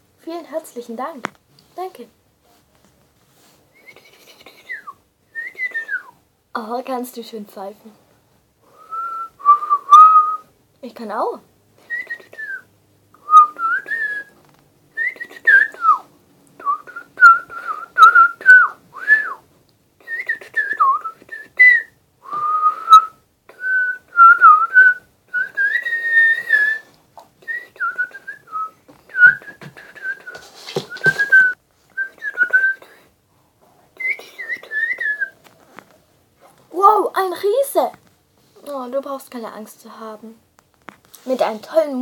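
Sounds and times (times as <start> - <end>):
person whistling a tune: 4.6 - 6.1, 8.7 - 10.4, 11.9 - 14.3, 15.0 - 16.0, 16.6 - 19.4, 20.0 - 33.0, 34.0 - 35.4.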